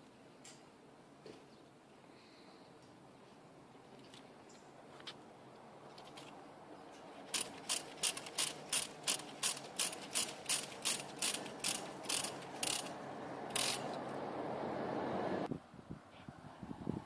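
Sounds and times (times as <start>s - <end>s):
cable tie ratcheting clicks: 7.3s - 14.0s.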